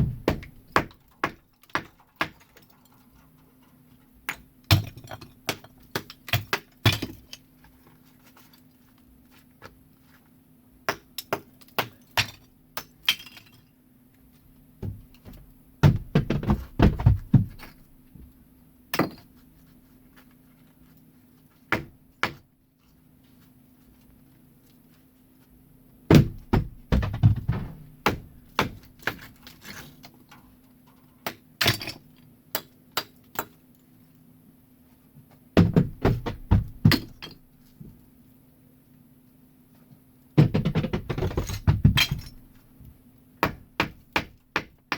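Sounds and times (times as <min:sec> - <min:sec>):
hammering on masonry: 0:00.0 - 0:02.4, 0:14.8 - 0:17.6, 0:21.7 - 0:22.4, 0:26.1 - 0:29.2, 0:35.6 - 0:37.2, 0:40.4 - 0:42.2, 0:43.4 - 0:44.9
rubble clattering: 0:26.1 - 0:30.1.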